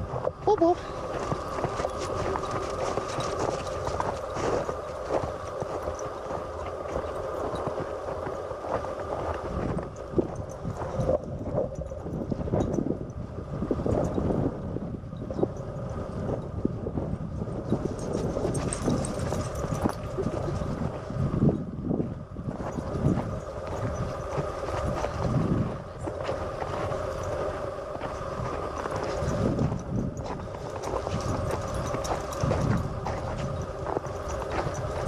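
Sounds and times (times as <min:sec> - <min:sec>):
footsteps crunching on snow: 0:00.0 - 0:11.6, 0:22.5 - 0:35.0.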